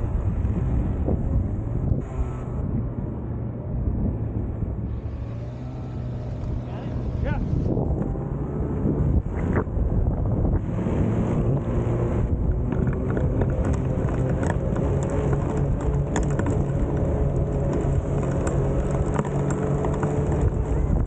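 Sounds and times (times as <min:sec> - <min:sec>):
snowmobile engine running: 0:00.0 - 0:21.0
wind on microphone: 0:00.0 - 0:21.0
ticks and clicks: 0:12.6 - 0:20.7.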